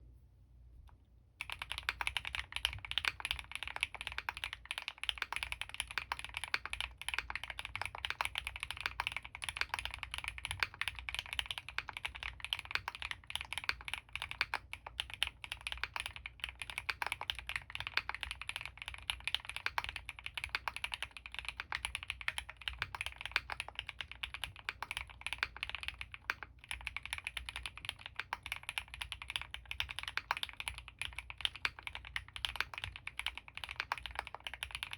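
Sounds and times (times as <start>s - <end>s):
mechanical keyboard typing: 1.4s - 34.9s.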